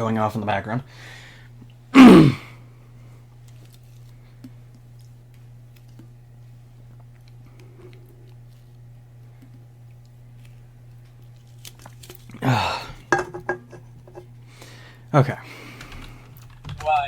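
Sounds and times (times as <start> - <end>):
steady low hum: 0.0 - 17.0
person grunting: 2.0 - 2.5, 12.4 - 13.0.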